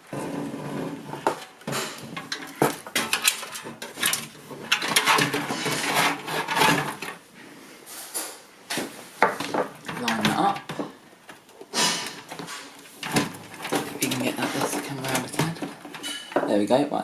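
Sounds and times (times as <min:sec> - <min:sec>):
scraping and rubbing: 0:00.0 - 0:08.1, 0:11.6 - 0:16.4
computer parts knocking on metal case: 0:01.2 - 0:07.2, 0:09.2 - 0:11.0, 0:12.0 - 0:16.6.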